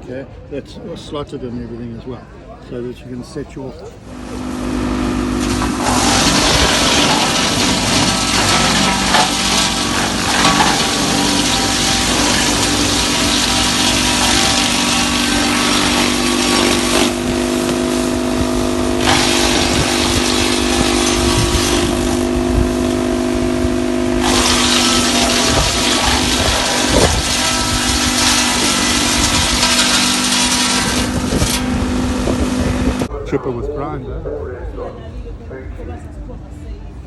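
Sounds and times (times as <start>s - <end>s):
machinery engine hum: 3.8s - 37.0s
loud rushing noise: 4.0s - 33.1s.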